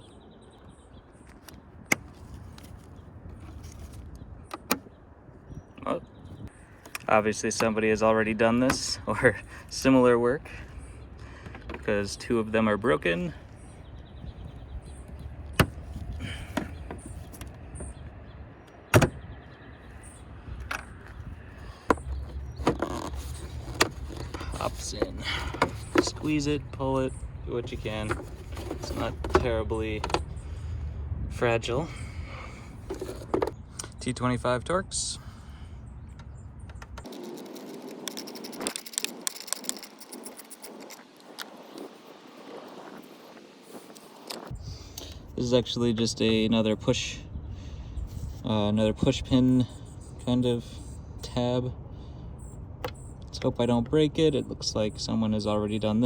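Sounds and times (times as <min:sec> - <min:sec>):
plastic scraping: 0:20.6 - 0:26.8, 0:27.6 - 0:30.3, 0:32.8 - 0:33.6, 0:36.7 - 0:42.0.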